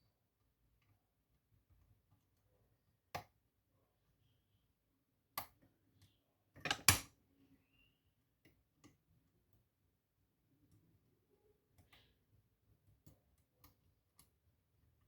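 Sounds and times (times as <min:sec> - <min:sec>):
lock picks clicking in a lock: 0:06.6 - 0:07.1.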